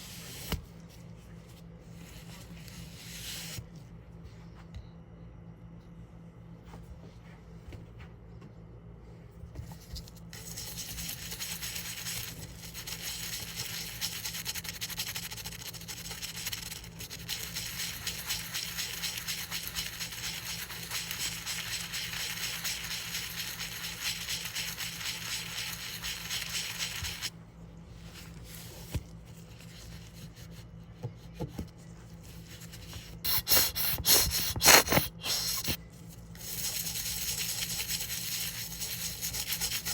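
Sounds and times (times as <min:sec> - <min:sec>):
coin being rubbed and scrubbed: 0:10.4 - 0:27.3, 0:32.4 - 0:35.8, 0:36.4 - 0:39.9.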